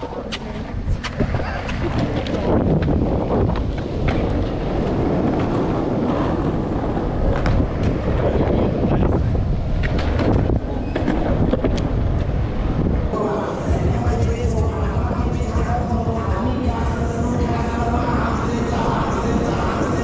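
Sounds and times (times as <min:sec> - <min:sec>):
skateboard wheels rolling on pavement: 0:00.0 - 0:20.0
wind buffeting microphone: 0:00.0 - 0:20.0.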